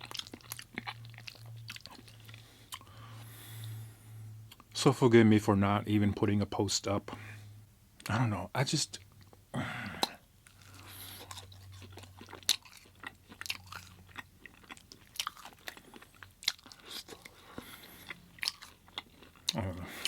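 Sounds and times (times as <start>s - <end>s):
chewing with wet mouth clicks: 0.0s - 2.9s, 10.0s - 20.0s
low steady hum: 0.0s - 20.0s.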